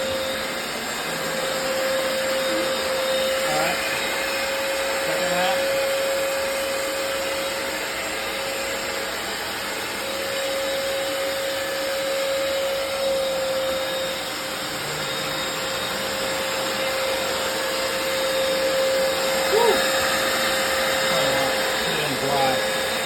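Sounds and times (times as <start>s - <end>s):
floor cleaner motor whir: 0.0s - 23.0s.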